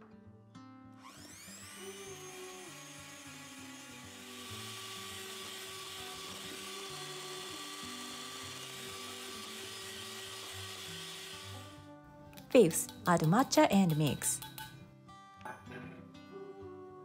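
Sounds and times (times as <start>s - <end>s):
electric hand mixer whirring: 1.0s - 11.9s.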